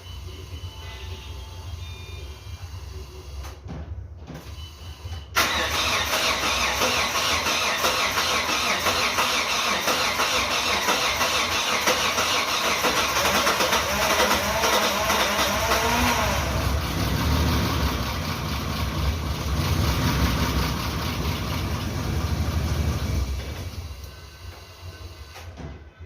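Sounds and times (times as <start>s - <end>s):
car engine starting and running: 5.4s - 24.1s.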